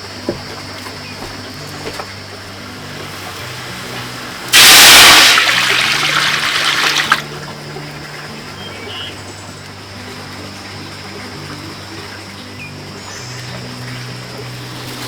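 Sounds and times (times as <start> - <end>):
rush of water: 1.5 - 8.4.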